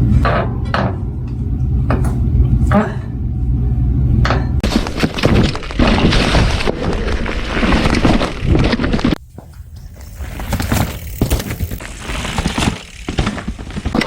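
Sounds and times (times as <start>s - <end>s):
wood cracking and splintering: 4.6s - 9.2s.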